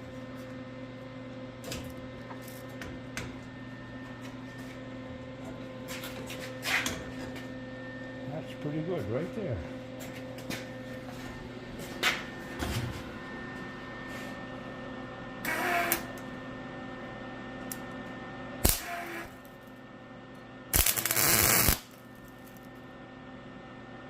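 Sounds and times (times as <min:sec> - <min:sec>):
steady electrical hum: 0:00.0 - 0:24.0
mig welder tack welds: 0:15.4 - 0:16.2, 0:18.6 - 0:19.6, 0:20.7 - 0:22.7.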